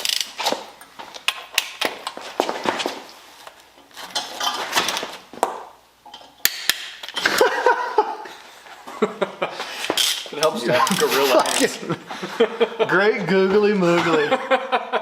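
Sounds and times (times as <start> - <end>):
scraping: 9.6 - 11.8.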